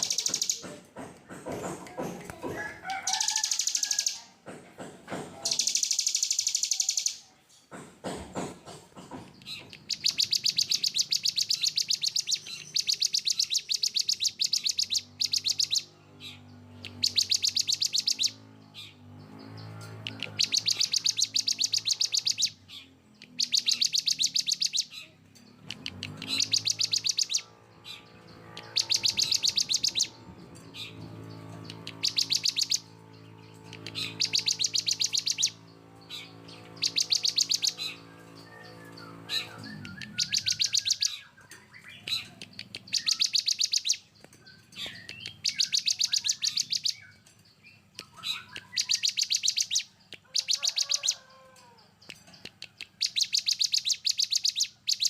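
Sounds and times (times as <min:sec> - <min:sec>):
songbird rapid harsh song: 0:00.0 - 0:04.4, 0:05.1 - 0:07.4, 0:08.3 - 0:55.0.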